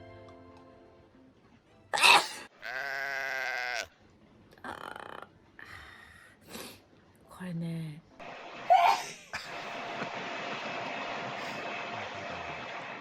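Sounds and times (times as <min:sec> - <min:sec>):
soft breathy noises: 0:05.6 - 0:06.9.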